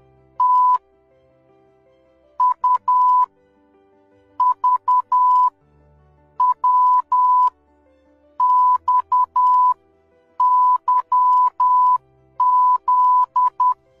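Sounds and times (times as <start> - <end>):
quiet background music: 0.0 - 14.0
morse code beeps: 0.4 - 0.8, 2.4 - 3.3, 4.4 - 5.5, 6.4 - 7.5, 8.4 - 9.8, 10.4 - 13.8.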